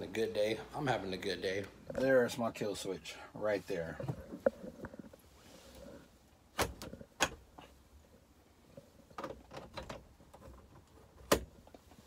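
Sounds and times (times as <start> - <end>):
sharp clicks and knocks: 6.6 - 7.8, 8.8 - 12.0.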